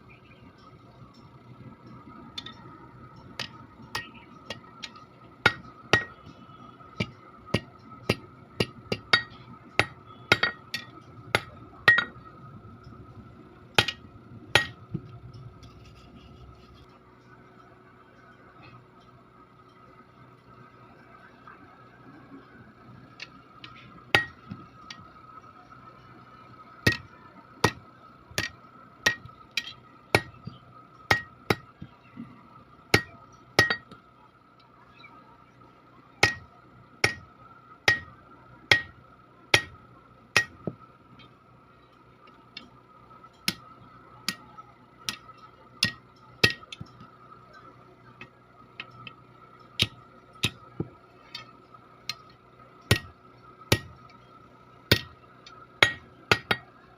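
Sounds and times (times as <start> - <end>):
steady high hum: 0.0 - 56.9
hammer striking iron on anvil: 2.4 - 2.6, 3.4 - 6.3, 7.0 - 12.3, 13.8 - 14.9, 24.2 - 25.0, 26.8 - 31.9, 32.9 - 34.0, 36.2 - 37.3, 37.9 - 39.8, 40.4 - 40.8, 43.4 - 43.7, 44.3 - 47.1, 49.8 - 51.5, 52.9 - 54.0, 54.9 - 55.2, 55.8 - 56.7.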